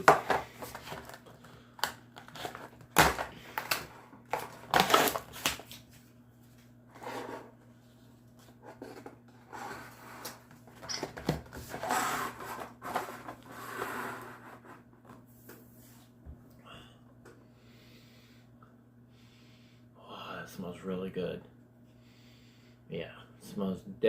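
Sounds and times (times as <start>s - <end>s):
seal tearing and crinkling: 1.8s - 5.8s.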